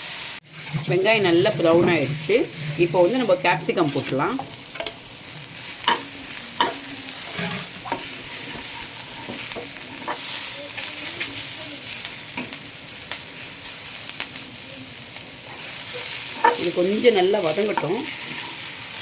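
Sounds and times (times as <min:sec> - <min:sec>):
vegetables sizzling in a pan: 0:00.0 - 0:19.0
spatula scraping a pan: 0:00.5 - 0:12.6, 0:15.4 - 0:19.0.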